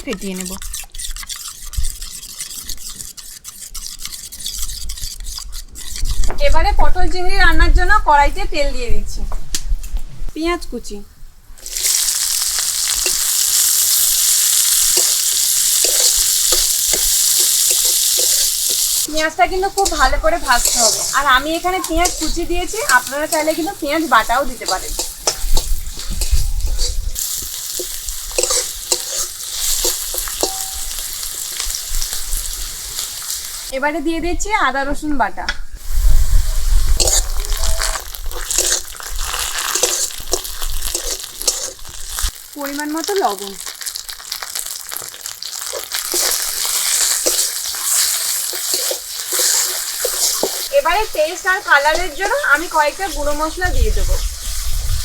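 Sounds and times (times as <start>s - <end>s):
spatula scraping a pan: 0.0s - 6.4s, 12.8s - 33.5s, 36.5s - 42.3s, 44.9s - 55.0s
onion sizzling in hot oil: 10.4s - 55.0s.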